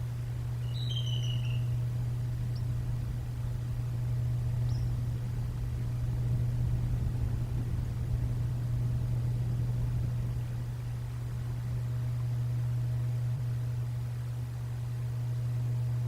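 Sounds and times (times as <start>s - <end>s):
low droning hum: 0.0s - 16.0s
faint high chirp: 0.6s - 1.8s, 4.6s - 5.0s.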